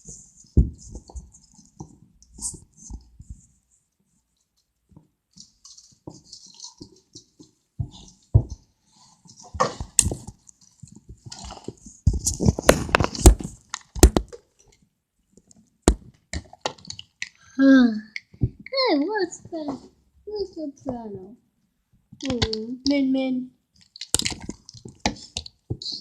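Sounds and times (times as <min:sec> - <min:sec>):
handling taps and knocks: 0:00.0 - 0:03.5, 0:04.9 - 0:14.8, 0:15.4 - 0:17.3
rustling: 0:00.0 - 0:14.8.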